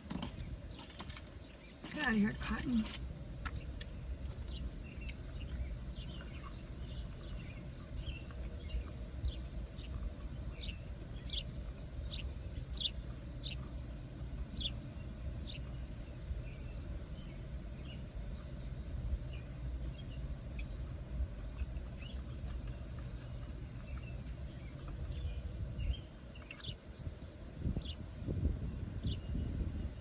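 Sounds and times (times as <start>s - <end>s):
steady low rumble: 0.0s - 30.0s
bird chirping: 0.1s - 18.7s.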